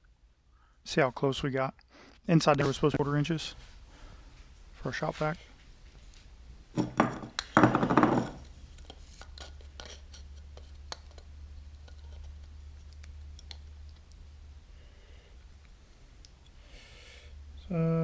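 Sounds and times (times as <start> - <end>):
low steady hum: 0.0 - 18.0
light clicks and scratches: 8.7 - 14.3.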